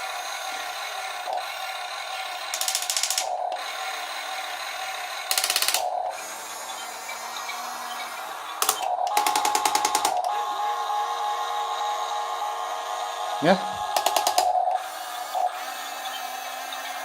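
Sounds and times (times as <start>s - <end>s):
small electric motors whirring: 0.0s - 17.0s
rapid ratcheting clicks: 2.4s - 3.4s, 5.3s - 5.9s, 8.6s - 10.3s, 14.0s - 14.5s.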